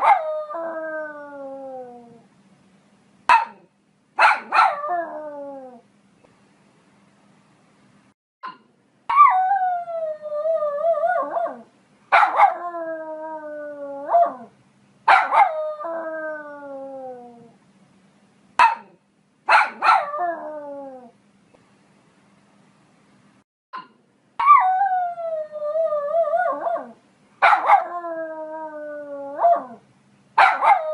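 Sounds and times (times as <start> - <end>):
dog barking and howling: 0.0 - 2.2, 4.2 - 5.8, 9.1 - 14.5, 15.1 - 17.4, 18.6 - 21.1, 24.4 - 29.8, 30.4 - 30.9
dog yapping: 3.3 - 4.9, 11.3 - 12.6, 15.1 - 15.6, 18.6 - 20.2, 26.6 - 27.9, 30.4 - 30.9.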